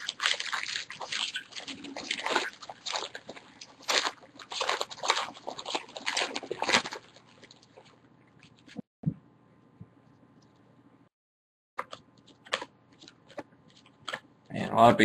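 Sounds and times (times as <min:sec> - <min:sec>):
trading card wrappers crinkling: 0:00.0 - 0:08.8.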